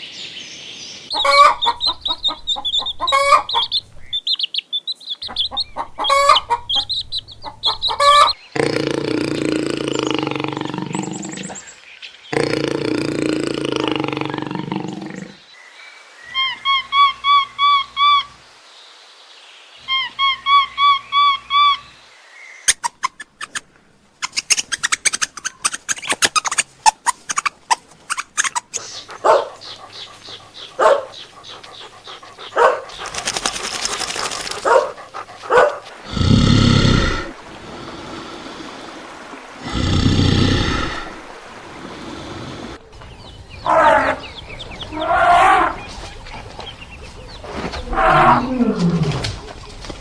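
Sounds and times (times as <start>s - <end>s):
low loud animal call: 28.8s - 37.4s, 42.9s - 50.0s.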